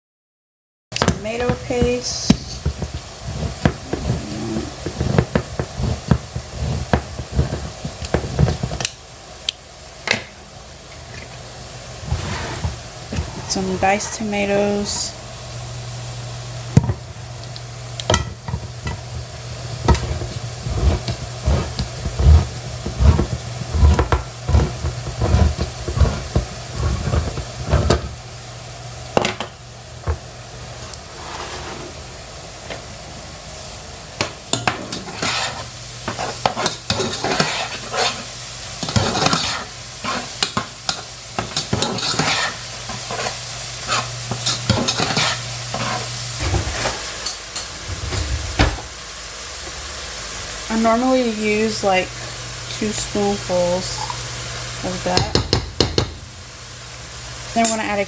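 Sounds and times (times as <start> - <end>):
sauce sizzling in a pan: 1.0 - 31.3, 31.9 - 58.0
utensil scraping in a pan: 1.3 - 8.9, 12.0 - 15.2, 18.1 - 28.2, 31.0 - 32.1, 34.5 - 49.0
knocks against a pan: 55.1 - 56.2.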